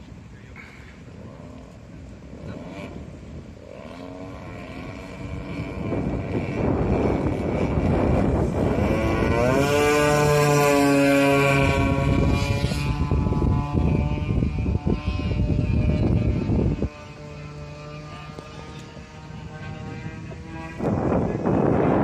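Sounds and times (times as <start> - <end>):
model airplane engines droning: 0.0 - 22.0.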